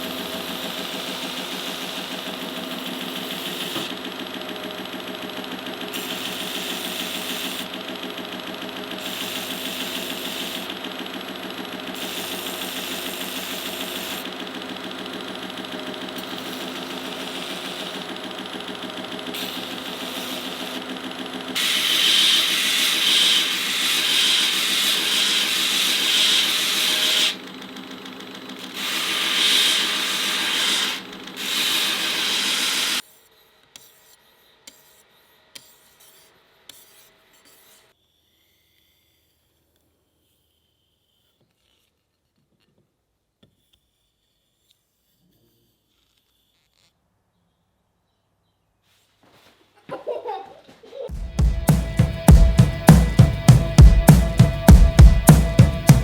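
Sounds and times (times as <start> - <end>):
power tool motor hum: 0.0 - 34.9.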